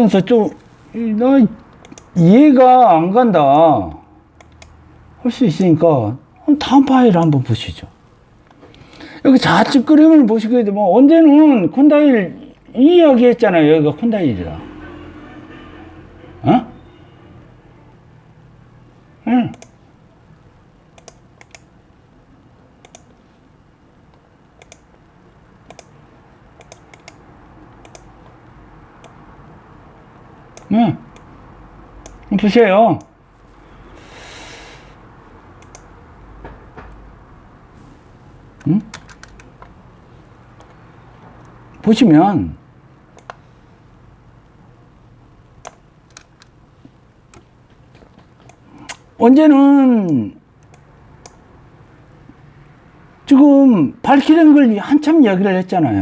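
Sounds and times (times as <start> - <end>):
faint room hum: 0.0 - 56.0
computer clicks: 1.6 - 2.2, 4.4 - 4.8, 7.1 - 7.5, 19.4 - 19.8, 20.9 - 21.8, 22.8 - 23.2, 24.1 - 28.4, 29.0 - 29.3, 30.5 - 31.4, 32.0 - 32.3, 35.6 - 36.0, 38.6 - 39.8, 43.1 - 43.4, 45.6 - 46.6, 47.3 - 49.2, 50.0 - 51.5.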